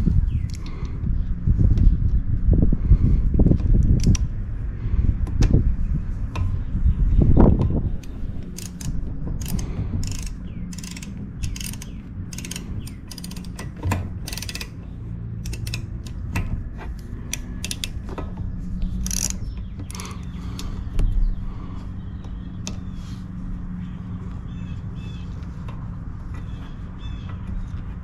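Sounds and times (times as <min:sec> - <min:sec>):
hand ratchet clicking: 0:08.0 - 0:14.8, 0:15.4 - 0:18.0, 0:18.9 - 0:20.8.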